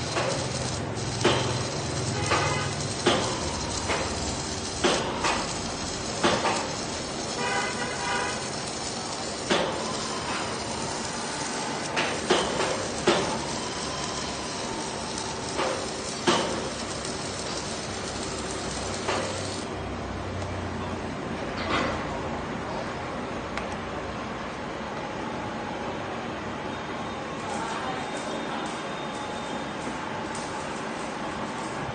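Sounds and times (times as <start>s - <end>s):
steady hiss: 0.0s - 19.7s.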